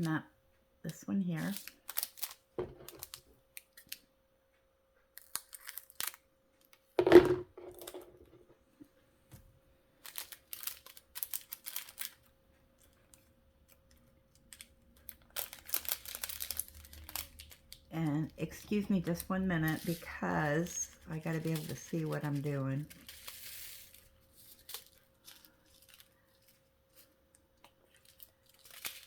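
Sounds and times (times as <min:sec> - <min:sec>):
plastic bag crinkling: 0:01.4 - 0:04.0, 0:10.0 - 0:29.0.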